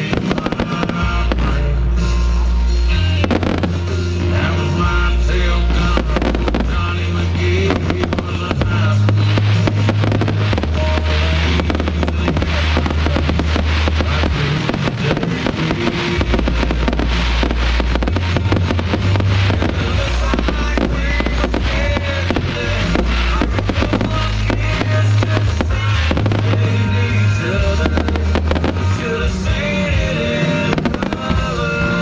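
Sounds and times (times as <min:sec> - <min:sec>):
fireworks bangs and crackles: 0:00.0 - 0:32.0
music with sustained bass: 0:00.0 - 0:32.0.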